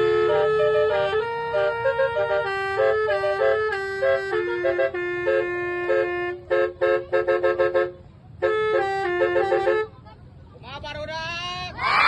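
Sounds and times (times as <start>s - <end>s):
musical air horn melody: 0.0s - 9.9s.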